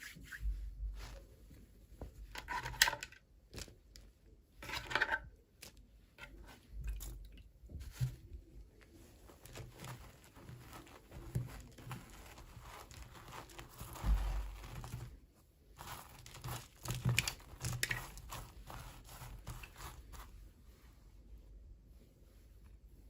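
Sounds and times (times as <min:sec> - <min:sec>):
packaging crinkling and tearing: 0:10.6 - 0:15.1, 0:15.8 - 0:18.5.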